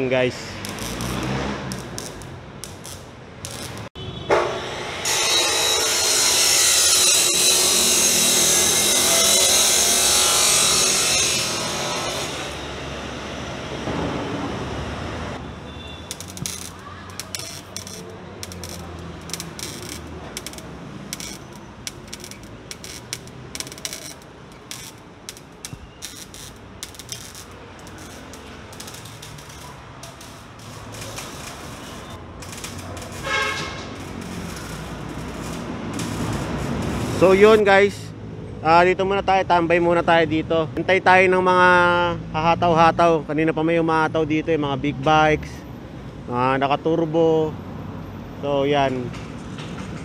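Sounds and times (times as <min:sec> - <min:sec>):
harsh rasping on exhaust pipe: 0:16.1 - 0:37.6.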